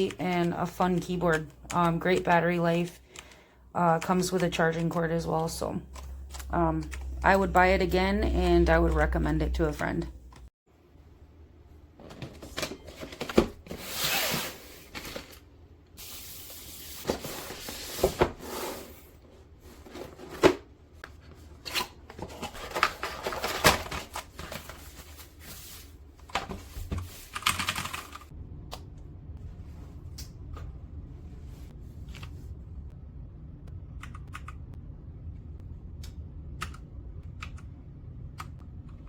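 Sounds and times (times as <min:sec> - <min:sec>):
rustling handling noise: 0:12.0 - 0:28.0.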